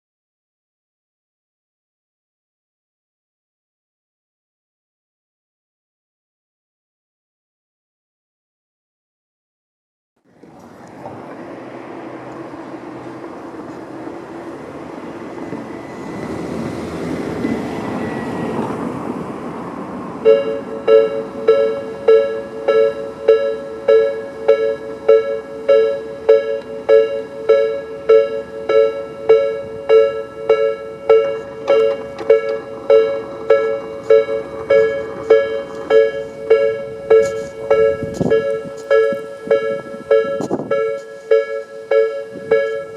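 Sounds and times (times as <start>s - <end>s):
broad rush of noise: 10.3s - 42.9s
level crossing alarm bell: 20.2s - 42.9s.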